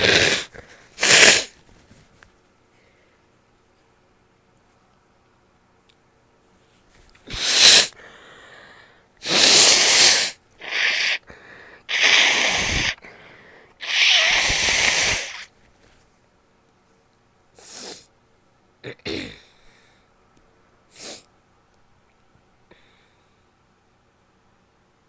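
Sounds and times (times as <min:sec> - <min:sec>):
person sneezing: 0:00.0 - 0:01.6, 0:07.3 - 0:08.0, 0:09.2 - 0:11.2, 0:11.9 - 0:13.0, 0:13.8 - 0:15.5, 0:17.6 - 0:18.1, 0:18.8 - 0:19.5
person blowing nose: 0:00.0 - 0:01.8, 0:07.3 - 0:08.0, 0:09.2 - 0:11.2, 0:11.9 - 0:13.0, 0:13.8 - 0:15.5, 0:17.6 - 0:18.1.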